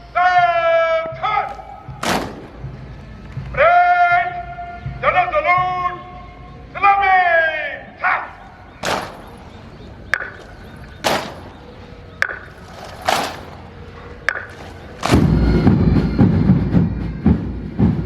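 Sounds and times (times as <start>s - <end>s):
rifle shots: 2.0s - 2.7s, 8.8s - 13.9s
rumbling clatter of cracks: 8.8s - 15.6s.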